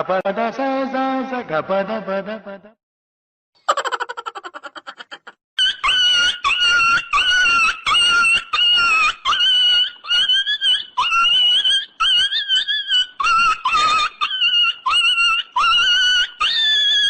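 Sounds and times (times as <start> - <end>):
comedy squeals: 3.6 - 17.0.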